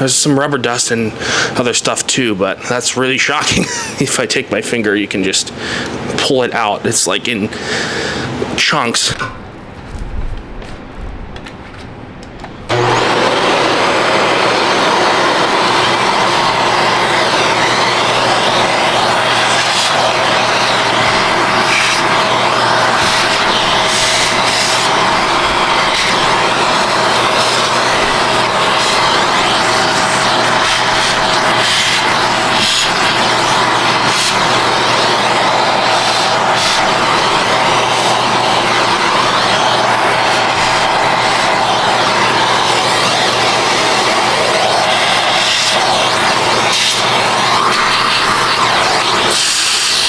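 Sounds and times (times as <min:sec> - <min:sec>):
vacuum cleaner running: 0:03.4 - 0:04.1, 0:12.4 - 0:50.0.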